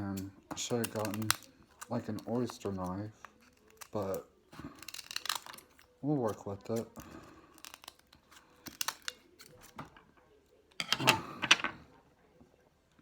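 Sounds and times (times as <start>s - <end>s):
knife scraping oyster shell: 0.0s - 6.9s, 7.5s - 9.7s
oyster shell cracking: 0.2s - 9.7s.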